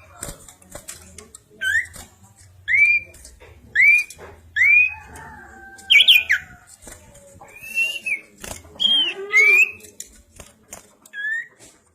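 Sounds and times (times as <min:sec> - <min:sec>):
bird whistled song: 0:07.5 - 0:09.8.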